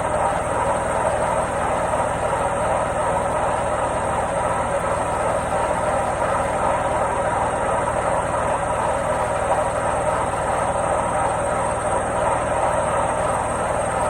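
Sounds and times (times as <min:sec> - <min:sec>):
washing machine running: 0:00.0 - 0:14.0.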